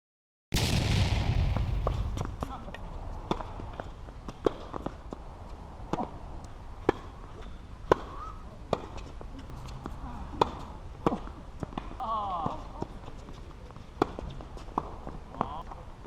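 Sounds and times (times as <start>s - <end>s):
tennis balls bouncing on court: 1.8s - 15.9s
tennis balls hit by rackets: 1.8s - 15.9s.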